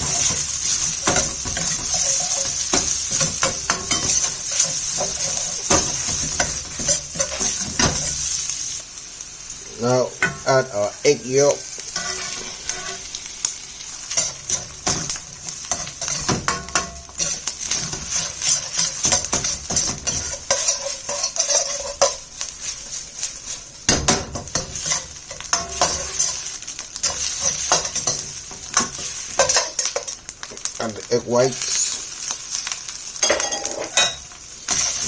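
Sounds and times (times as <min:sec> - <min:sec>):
food sizzling in oil: 0:00.0 - 0:35.0
utensil scraping a pan: 0:11.8 - 0:13.2, 0:14.1 - 0:23.7.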